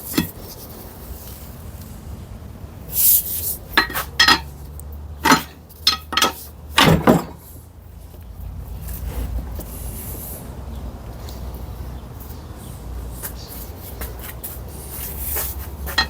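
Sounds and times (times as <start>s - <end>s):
metal tools clinking and scraping: 0.0s - 0.6s, 3.8s - 4.6s, 5.2s - 7.5s.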